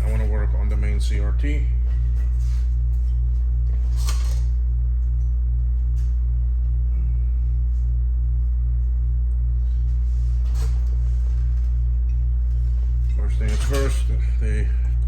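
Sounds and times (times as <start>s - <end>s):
low electrical hum: 0.0s - 15.0s
pulsing buzz: 0.0s - 15.0s
knocks and rustling of parts: 10.4s - 14.3s.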